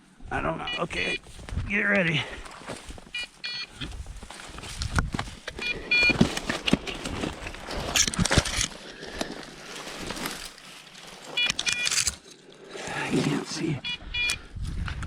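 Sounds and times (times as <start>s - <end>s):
footsteps through dry brush: 1.0s - 12.3s.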